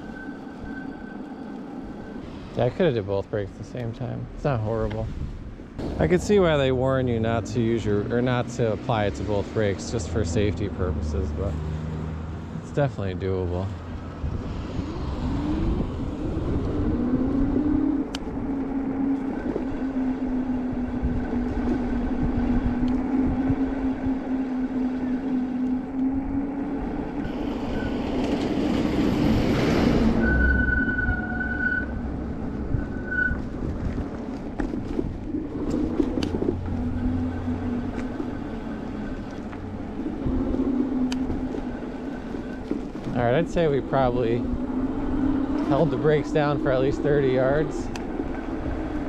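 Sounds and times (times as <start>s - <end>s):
road noise: 0.0s - 49.0s
wind: 0.0s - 49.0s
brief high-pitched tone: 30.2s - 32.0s.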